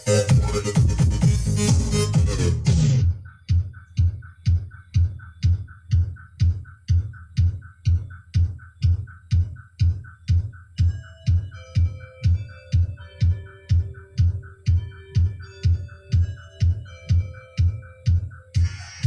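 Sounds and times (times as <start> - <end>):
held synth notes: 0.0 - 3.3, 10.8 - 19.0
kick drum beat: 0.3 - 19.0.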